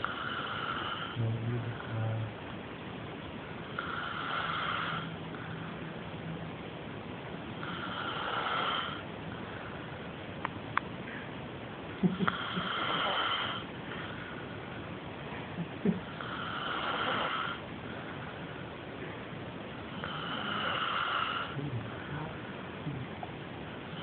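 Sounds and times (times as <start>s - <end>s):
man snoring: 0.0s - 2.2s, 3.8s - 5.1s, 7.6s - 9.0s, 12.2s - 13.7s, 16.2s - 17.6s, 20.0s - 22.4s.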